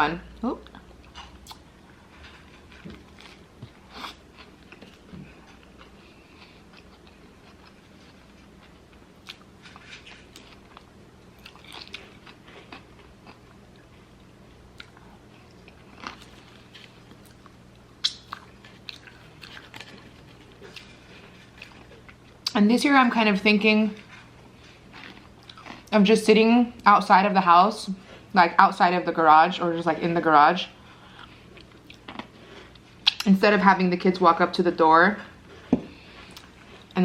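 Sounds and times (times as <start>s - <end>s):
faint steady hum: 0.0s - 37.0s
chewing and biting: 1.0s - 13.9s, 14.8s - 22.6s, 24.0s - 25.9s, 31.0s - 33.3s.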